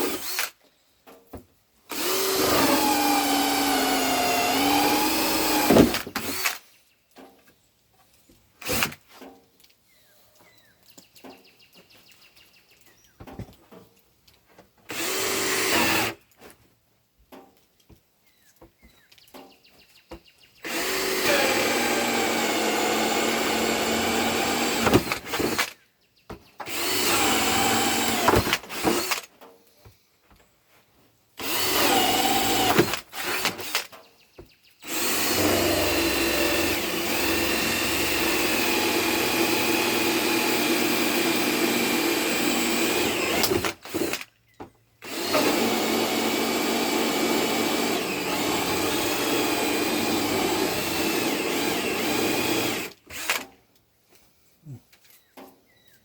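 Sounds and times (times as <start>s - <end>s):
power drill whining: 0.0s - 0.6s, 1.9s - 6.6s, 8.6s - 9.0s, 14.9s - 16.2s, 20.6s - 25.8s, 26.6s - 29.3s, 31.4s - 33.9s, 34.8s - 44.3s, 45.0s - 53.5s.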